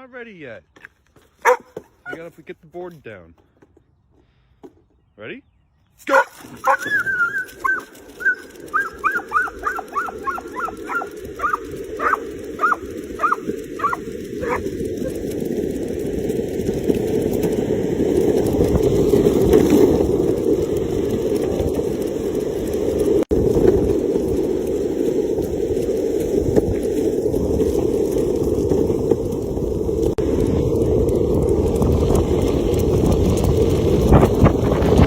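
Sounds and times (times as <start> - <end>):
dog yelping: 1.4 - 2.2, 6.1 - 15.2.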